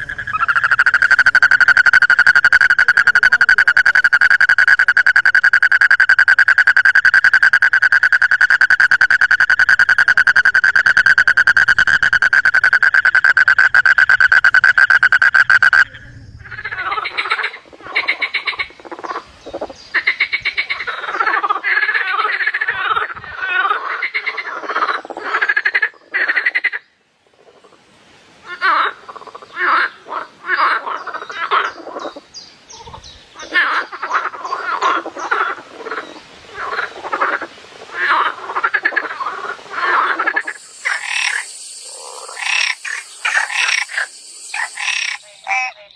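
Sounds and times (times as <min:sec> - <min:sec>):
frogs croaking chorus: 0:00.0 - 0:45.9
frog high trill: 0:39.9 - 0:45.7.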